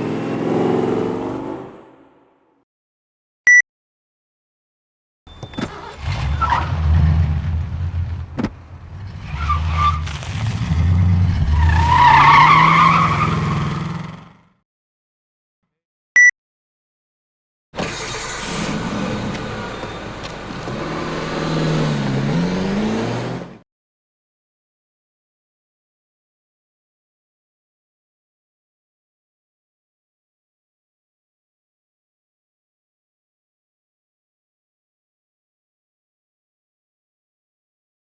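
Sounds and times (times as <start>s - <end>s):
car engine revving: 0.0s - 2.3s, 20.7s - 23.6s.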